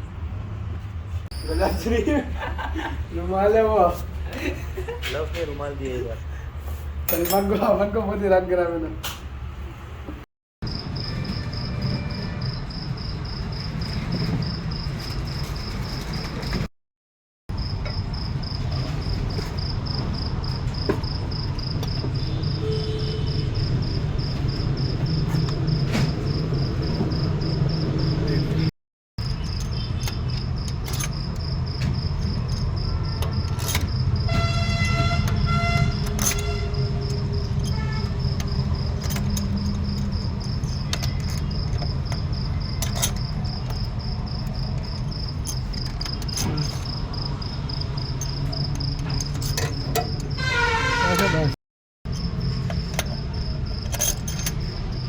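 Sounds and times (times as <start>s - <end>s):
insect chirping: 10.6s - 16.6s, 17.5s - 28.5s, 29.2s - 51.5s, 52.1s - 55.0s
horn-like tone: 34.3s - 36.9s, 50.4s - 51.6s.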